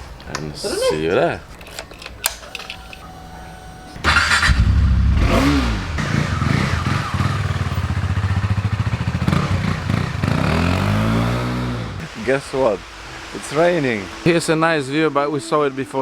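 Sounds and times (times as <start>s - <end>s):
motorcycle engine revving: 4.0s - 12.1s.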